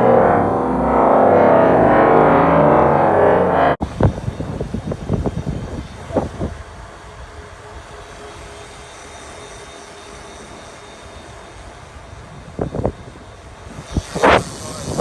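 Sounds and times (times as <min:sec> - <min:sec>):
road and vehicle rumble: 0:00.0 - 0:06.6.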